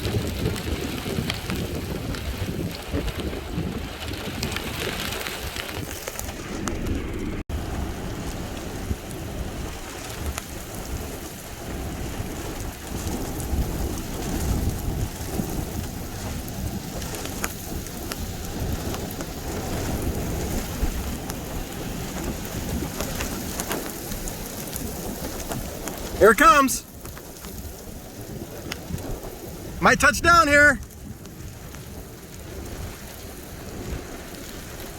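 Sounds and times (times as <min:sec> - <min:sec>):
steady rain falling: 0:00.0 - 0:34.9
low rumble: 0:06.0 - 0:08.3.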